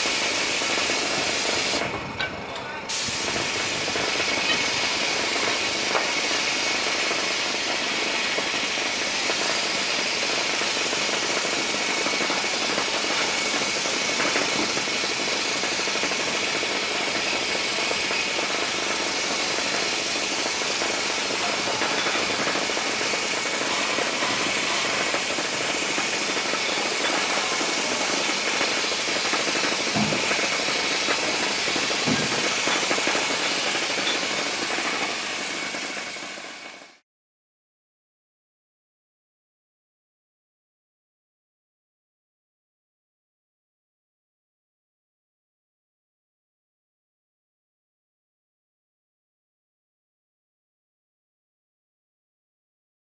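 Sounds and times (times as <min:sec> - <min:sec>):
sprayer machine running: 0:00.0 - 0:01.9, 0:02.6 - 0:37.0.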